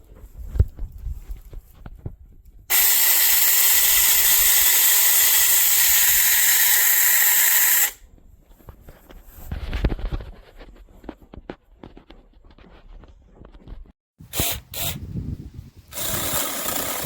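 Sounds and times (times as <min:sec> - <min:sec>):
loud steady hiss: 0:02.7 - 0:08.0.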